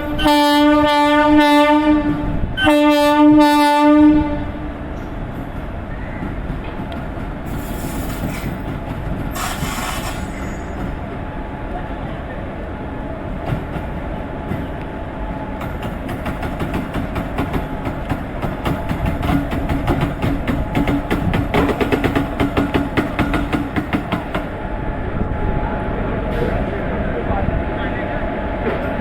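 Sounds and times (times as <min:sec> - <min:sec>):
electric locomotive rumbling: 0:00.0 - 0:29.0
burst of hiss: 0:09.4 - 0:10.7.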